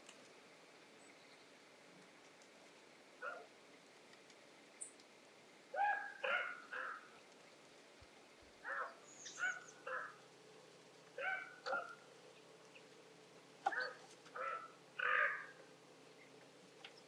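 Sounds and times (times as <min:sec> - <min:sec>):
birds calling: 0:05.8 - 0:07.2, 0:08.6 - 0:10.3, 0:11.2 - 0:13.0, 0:13.6 - 0:17.0
high bird chirp: 0:09.1 - 0:09.8.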